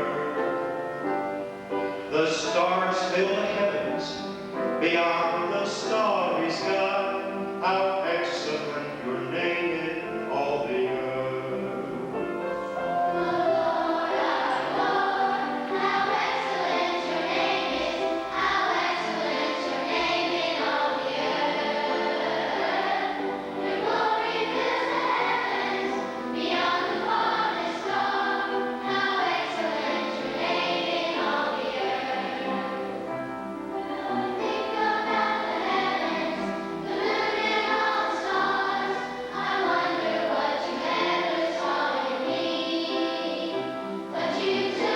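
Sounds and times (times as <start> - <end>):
church choir singing: 0.0 - 44.9.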